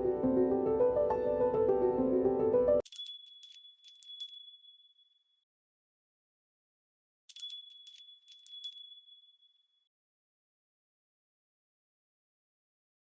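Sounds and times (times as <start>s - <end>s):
tinkling chime: 2.8s - 5.2s, 7.3s - 9.7s.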